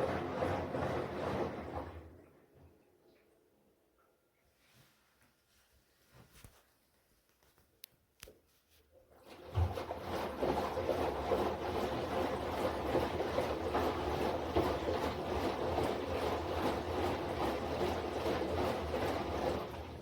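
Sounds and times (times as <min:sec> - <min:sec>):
washing machine running: 0:00.0 - 0:02.6, 0:09.1 - 0:20.0.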